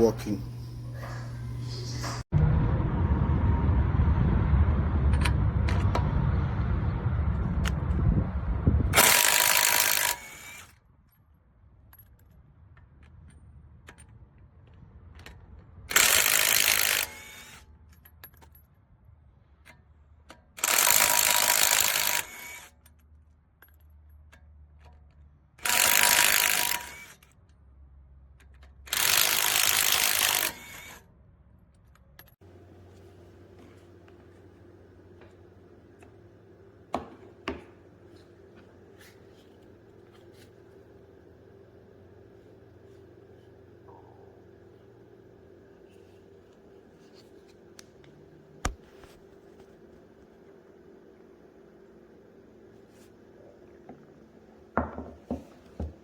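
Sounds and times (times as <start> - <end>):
person talking: 0.0 - 2.3
loud low rumble: 0.4 - 9.0
impact wrench whining: 9.0 - 10.7, 15.9 - 17.6, 20.6 - 22.7, 25.6 - 27.2, 28.9 - 31.0, 32.4 - 44.8.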